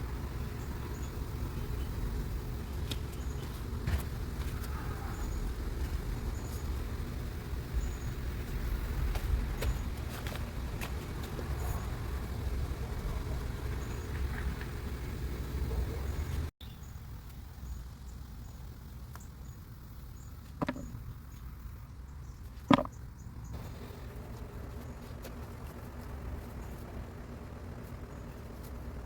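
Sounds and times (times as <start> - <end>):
sharp knocks: 20.6 - 21.0, 22.7 - 23.0.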